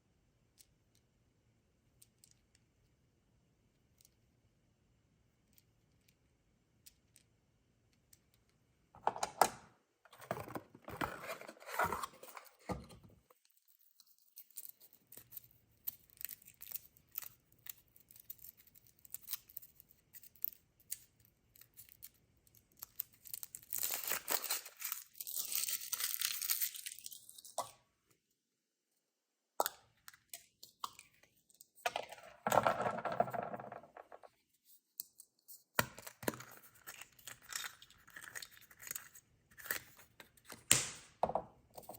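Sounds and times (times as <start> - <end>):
foil and plastic wrappers crinkling: 22.9 - 27.4.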